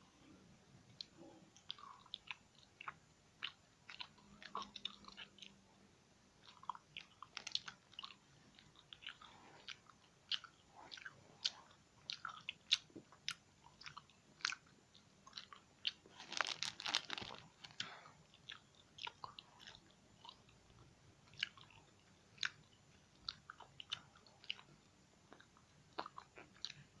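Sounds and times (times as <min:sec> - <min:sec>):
person chewing crunchily: 0:01.0 - 0:05.7, 0:06.4 - 0:27.0.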